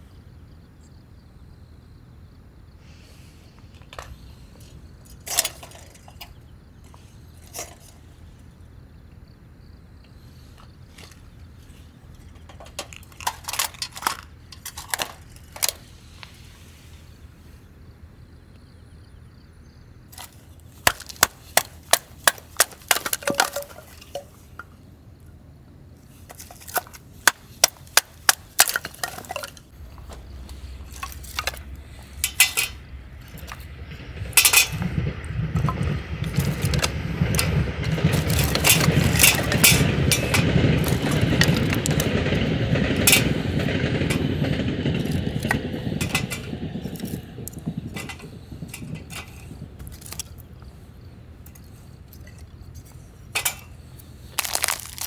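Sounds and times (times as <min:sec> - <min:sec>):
camp gear clinking and knocking: 0:03.6 - 0:08.6, 0:10.0 - 0:16.3, 0:20.1 - 0:24.9, 0:26.1 - 0:55.0
train passing: 0:26.4 - 0:55.0.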